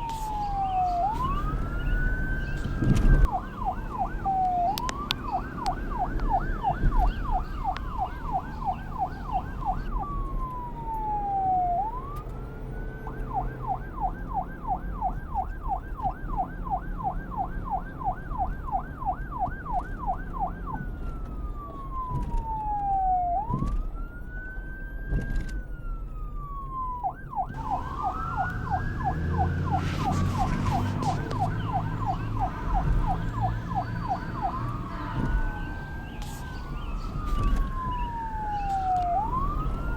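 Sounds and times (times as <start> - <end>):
police car siren: 0.0 - 39.9
low engine rumble: 25.6 - 39.9.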